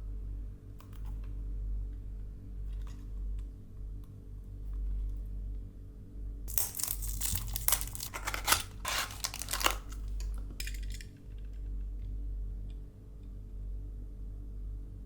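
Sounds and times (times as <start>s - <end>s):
packaging crinkling and tearing: 6.5s - 11.0s.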